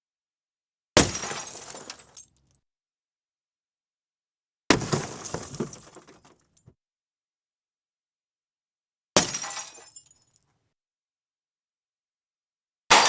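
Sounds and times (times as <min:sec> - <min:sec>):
glass smashing: 0:01.0 - 0:02.2, 0:09.2 - 0:10.0.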